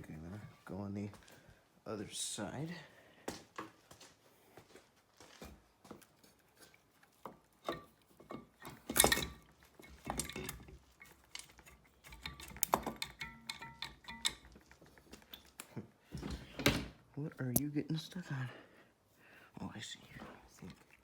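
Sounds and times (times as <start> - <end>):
metal clinks and knocks: 7.2 - 15.6
metal clatter: 7.6 - 15.0.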